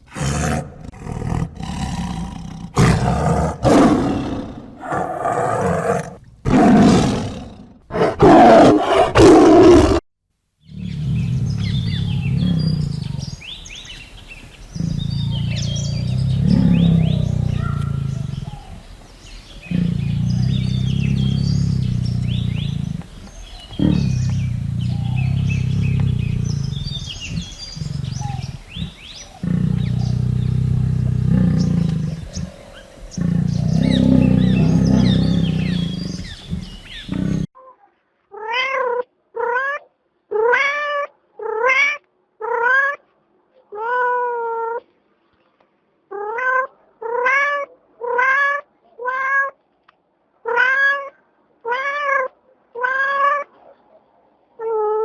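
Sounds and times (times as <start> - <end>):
cat purring: 10.8 - 37.5.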